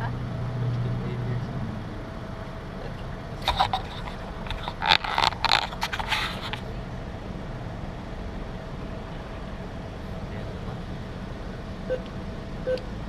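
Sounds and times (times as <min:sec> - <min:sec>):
steady low hum: 0:00.0 - 0:13.0
cash machine clattering and whirring: 0:03.4 - 0:06.6.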